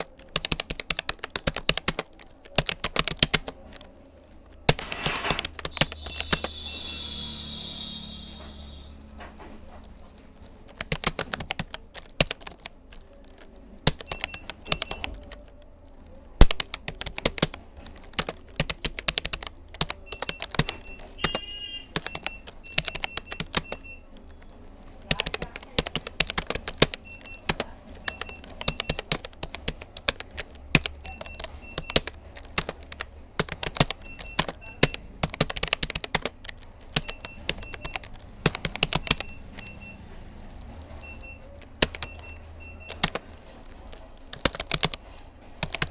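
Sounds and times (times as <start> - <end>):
keyboard key clicks: 16.4 - 21.4, 25.1 - 39.9, 41.0 - 45.9.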